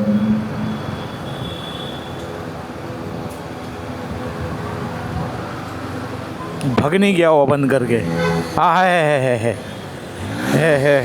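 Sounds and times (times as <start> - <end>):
motorcycle engine throbbing: 0.0 - 1.4, 7.8 - 11.0.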